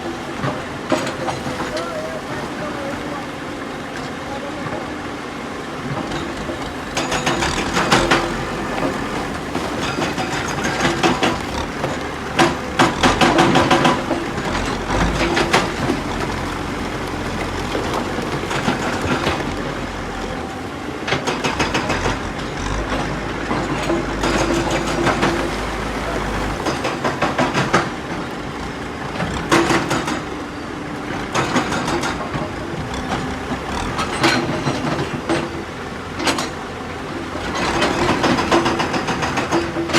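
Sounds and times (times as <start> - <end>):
excavator diesel engine under load: 0.0 - 39.9
hydraulic breaker hammering stone: 5.8 - 19.8, 21.0 - 39.9.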